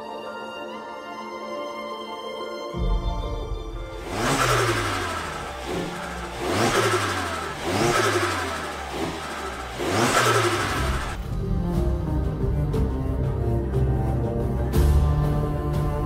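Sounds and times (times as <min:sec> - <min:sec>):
car engine revving: 0:03.9 - 0:11.3.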